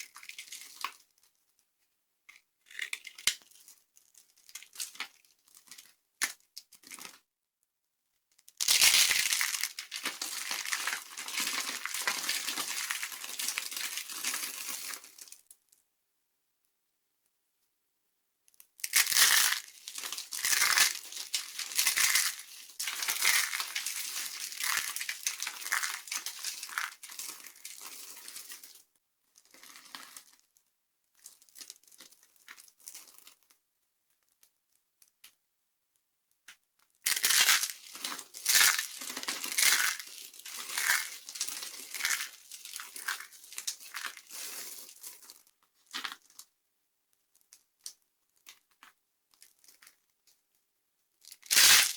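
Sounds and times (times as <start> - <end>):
dry soap crackling and crunching: 0.0 - 7.2, 8.3 - 15.8, 18.5 - 35.4, 36.3 - 50.5, 51.2 - 51.9.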